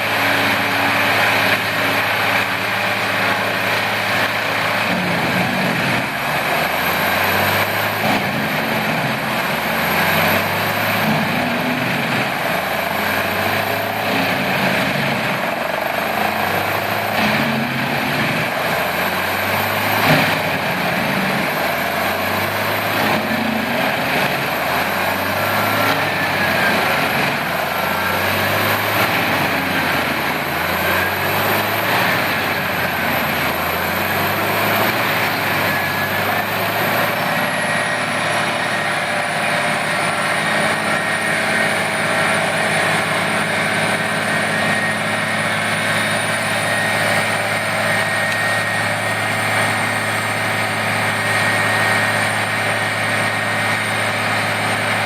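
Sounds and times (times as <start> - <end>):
wood chipper engine drone: 0.0 - 55.0.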